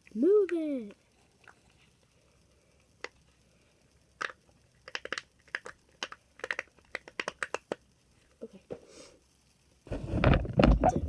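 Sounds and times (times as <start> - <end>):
fidget toy bubbles popping: 4.2 - 7.9.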